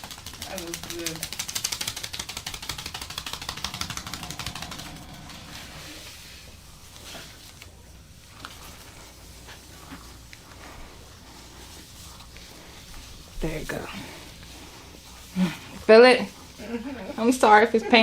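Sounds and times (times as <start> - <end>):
percussive massage strikes: 0.0 - 6.1.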